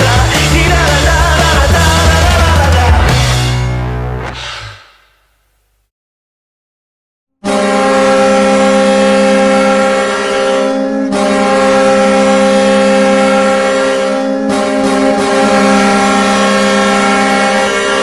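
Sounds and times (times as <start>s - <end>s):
goal horn blasts: 7.4s - 18.0s.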